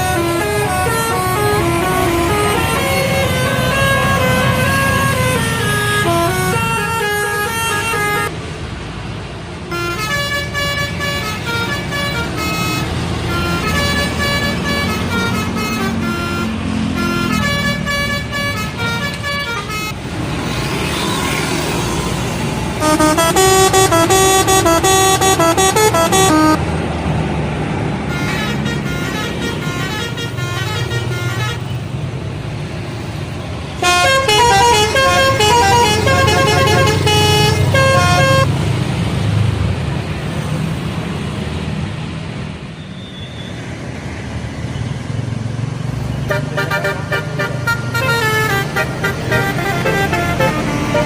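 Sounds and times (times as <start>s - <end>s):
bus horn playing tunes: 0.0s - 8.3s, 9.7s - 20.0s, 22.8s - 26.6s, 28.1s - 31.9s, 33.8s - 38.6s, 46.2s - 51.0s
bus engines and traffic rumble: 0.0s - 51.0s.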